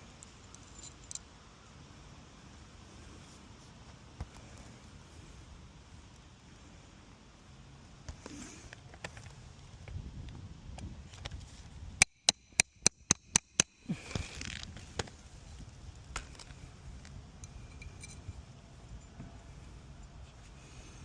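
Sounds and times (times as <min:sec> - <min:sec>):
low steady rumble: 0:09.2 - 0:21.0.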